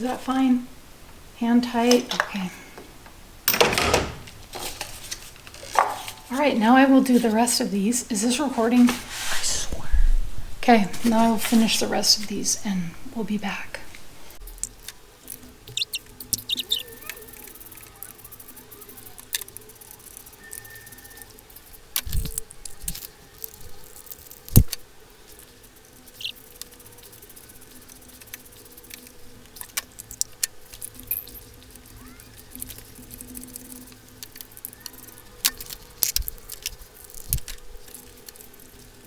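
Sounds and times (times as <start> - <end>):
faint steady hum: 0.0 - 39.0
metal hand tools clicking: 14.5 - 39.0.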